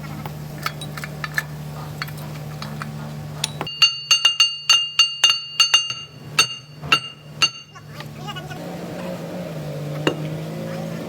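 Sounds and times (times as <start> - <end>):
steady low hum: 0.0 - 11.0
hammer ringing on steel: 3.4 - 8.1.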